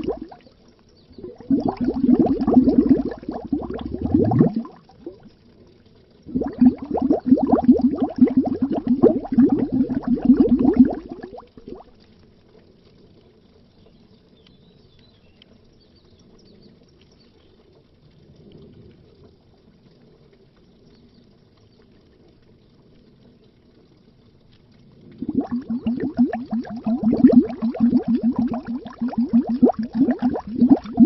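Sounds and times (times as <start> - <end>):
underwater bubbles burbling: 0.0 - 12.2, 24.8 - 31.0
faint low underwater murmur: 0.0 - 31.0.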